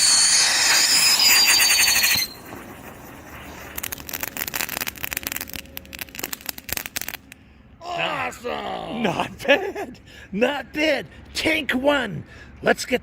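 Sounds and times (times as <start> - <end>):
firework crackles: 0.0 - 7.4
firework hissing whistle: 0.0 - 7.4.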